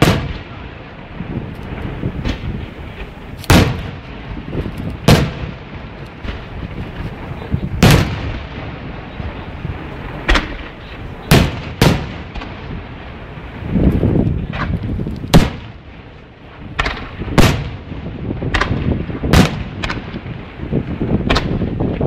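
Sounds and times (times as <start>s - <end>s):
fireworks exploding: 0.0s - 22.0s
low rumble of reports: 0.2s - 16.8s.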